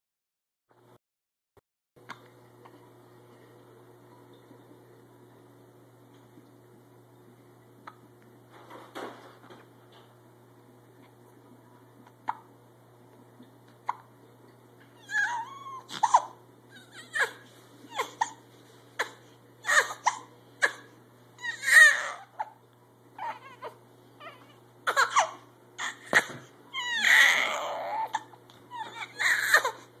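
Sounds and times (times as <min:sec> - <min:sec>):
baby crying: 0:15.0 - 0:18.4, 0:19.0 - 0:22.6, 0:23.2 - 0:29.9.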